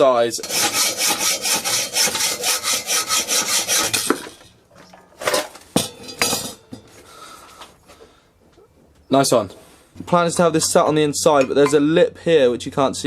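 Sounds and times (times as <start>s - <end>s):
hacksaw cutting steel plate: 0.4s - 4.4s.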